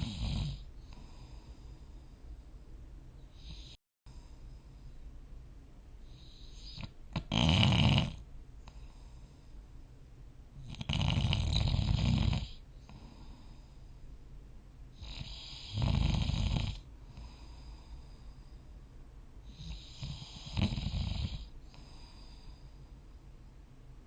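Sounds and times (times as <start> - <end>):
person snoring: 0.0 - 1.7, 6.6 - 8.2, 10.6 - 13.6, 15.0 - 17.6, 19.5 - 22.5.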